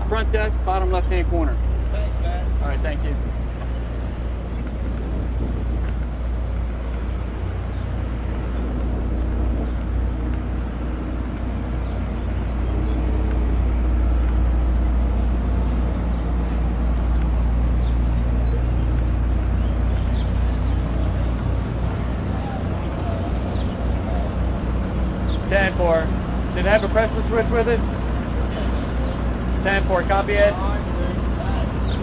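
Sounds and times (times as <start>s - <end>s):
layered steady hums: 0.0s - 32.0s
machinery engine droning: 0.0s - 32.0s.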